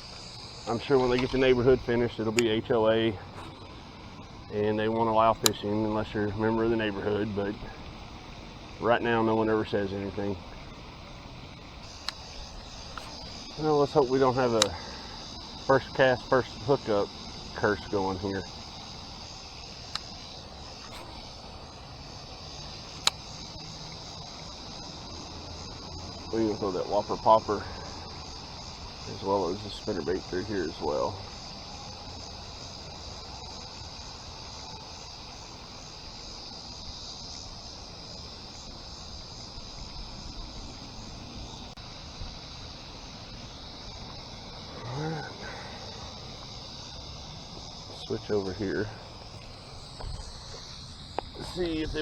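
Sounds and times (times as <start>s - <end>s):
crickets chirring: 0.0s - 52.0s
high-pitched insect drone: 0.0s - 52.0s
sharp click: 1.0s - 2.6s, 4.9s - 5.8s, 11.8s - 13.5s, 14.5s - 14.9s, 19.8s - 20.2s, 22.9s - 23.7s.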